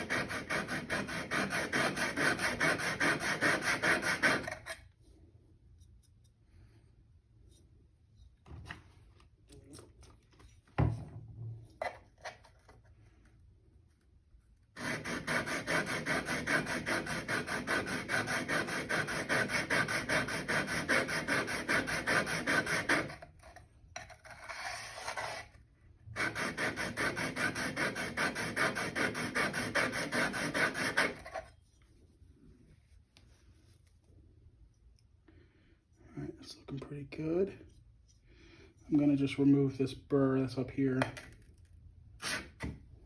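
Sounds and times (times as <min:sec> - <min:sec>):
blade rubbing on sharpening stone: 0:00.0 - 0:04.8, 0:24.2 - 0:25.6.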